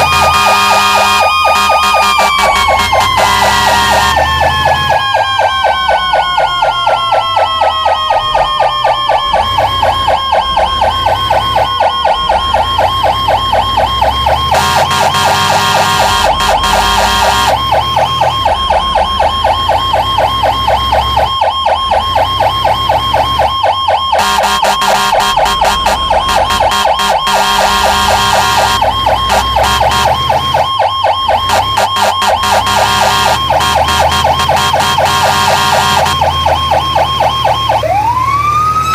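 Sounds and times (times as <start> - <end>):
electronic siren yelp: 0.0 - 38.9
siren tone falling in pitch: 0.0 - 38.9
truck engine rumbling: 0.0 - 38.9.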